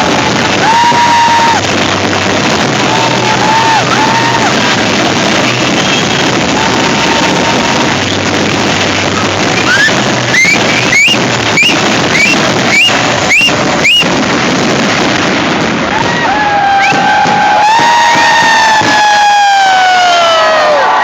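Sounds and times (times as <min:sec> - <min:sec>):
crowd noise: 0:00.0 - 0:21.0
whistling fireworks cracking: 0:00.0 - 0:21.0
song playing: 0:07.5 - 0:14.3.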